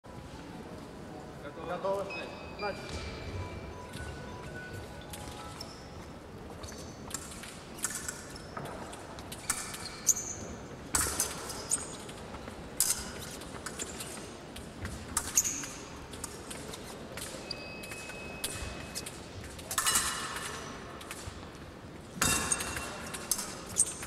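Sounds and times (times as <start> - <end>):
thin steady beep: 1.5 - 6.0, 17.4 - 19.0.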